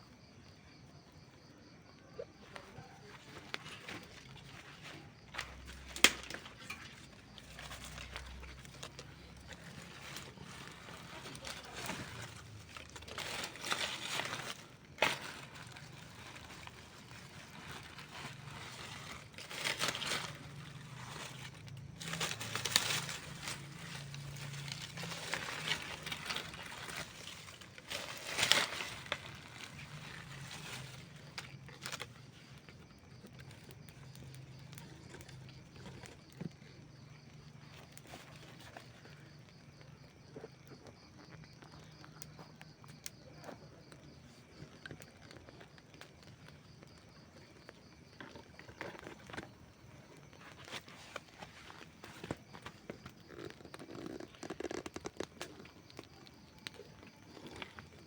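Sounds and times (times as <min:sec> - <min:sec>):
campfire crackling and popping: 0:05.3 - 0:40.1, 0:51.9 - 0:58.0.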